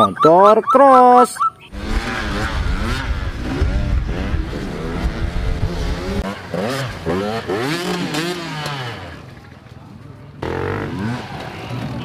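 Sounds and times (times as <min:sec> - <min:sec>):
heavy low rumble: 0:01.7 - 0:06.3
dirt bike engine revving: 0:01.7 - 0:09.4, 0:10.4 - 0:12.0.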